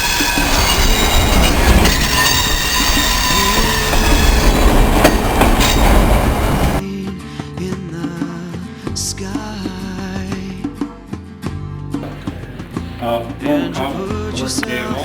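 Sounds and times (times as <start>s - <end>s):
train rumbling by: 0.0s - 6.8s
train wheel squeal: 0.0s - 6.8s
music: 6.8s - 15.0s.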